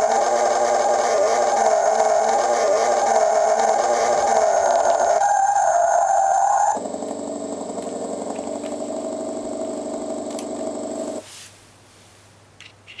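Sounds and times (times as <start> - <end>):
simulated engine sound from speaker: 0.0 - 11.2.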